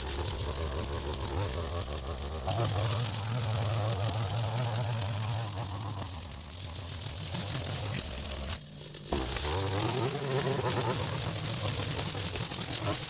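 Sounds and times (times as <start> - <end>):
strimmer cutting wet grass: 0.0 - 13.0.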